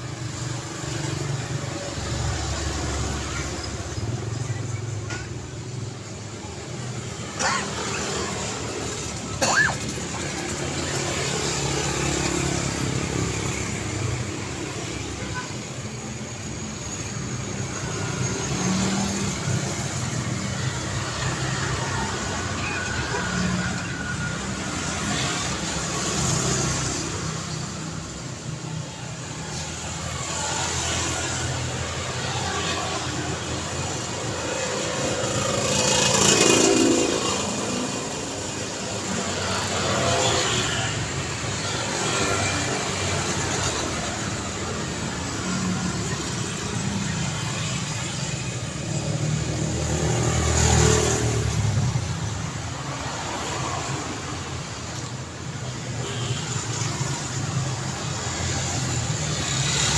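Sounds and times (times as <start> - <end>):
vehicles passing: 0.0 - 59.9.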